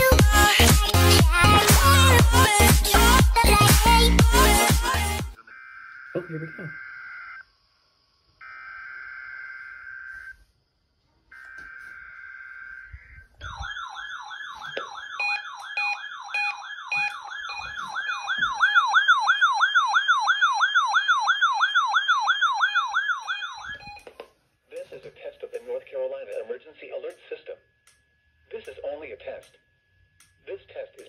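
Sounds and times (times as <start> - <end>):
electronic yelping siren tone: 4.4 - 7.5, 8.4 - 10.5, 11.3 - 24.0.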